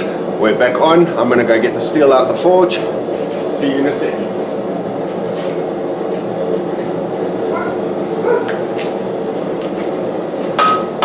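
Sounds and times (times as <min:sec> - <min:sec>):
gas forge burner roaring: 0:00.0 - 0:11.0
hammer clanging on anvil: 0:10.6 - 0:11.0.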